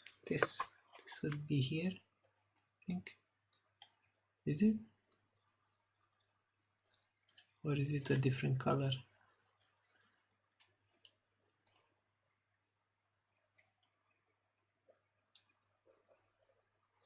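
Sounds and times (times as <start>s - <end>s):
faint small clicks: 6.0s - 8.3s, 9.4s - 12.0s, 13.5s - 14.0s, 15.3s - 15.6s.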